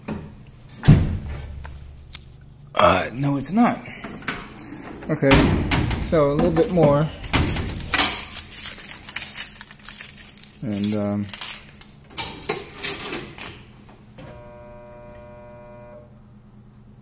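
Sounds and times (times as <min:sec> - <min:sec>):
electrical hum: 0:00.0 - 0:17.0
dishwasher metallic clattering: 0:05.2 - 0:09.8, 0:10.4 - 0:13.6.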